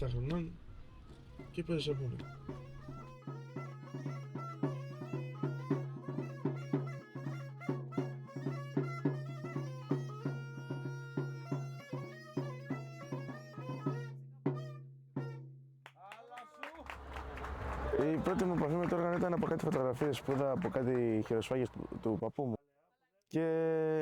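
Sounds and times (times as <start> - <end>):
drum beating: 0.9 - 11.5, 16.6 - 22.3.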